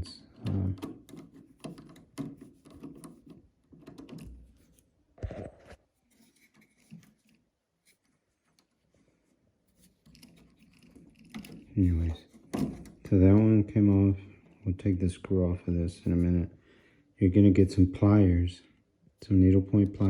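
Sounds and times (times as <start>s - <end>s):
wire scraping on switch terminal: 0.0s - 8.8s, 9.7s - 16.5s.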